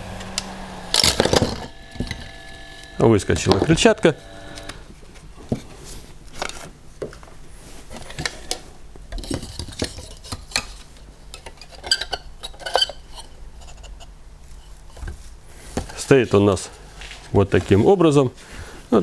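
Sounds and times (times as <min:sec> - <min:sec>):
plastic fan parts clicking: 0:00.0 - 0:04.9.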